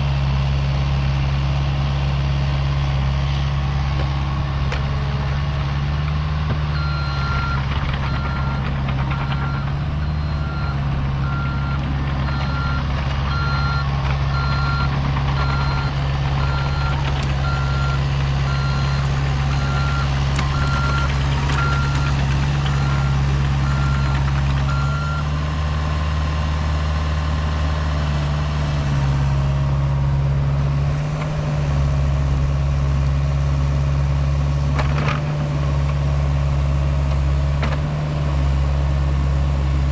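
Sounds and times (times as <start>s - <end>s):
diesel engine running: 0.0s - 39.9s
backup alarm beeping: 6.8s - 25.2s.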